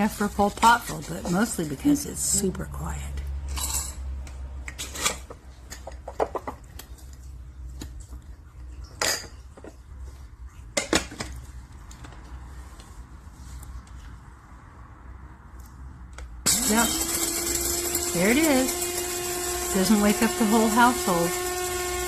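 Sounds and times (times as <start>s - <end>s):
coffee grinder clicks and clinks: 16.5s - 22.0s.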